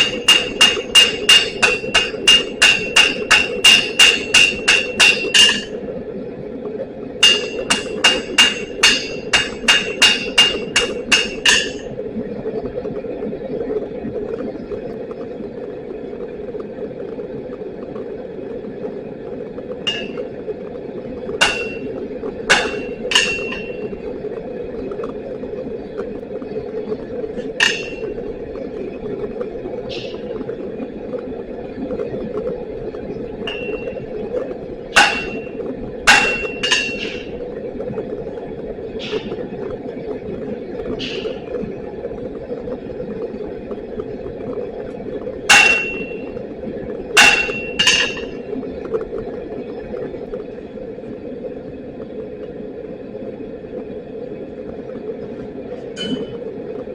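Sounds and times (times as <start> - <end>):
hammer striking an anvil: 0.0 - 5.7, 7.2 - 11.8, 19.9 - 20.2, 21.4 - 21.9, 22.5 - 23.9, 27.6 - 28.1, 33.5 - 34.0, 35.0 - 37.3, 45.5 - 46.3, 47.2 - 48.4
steady rushing noise: 0.0 - 56.9.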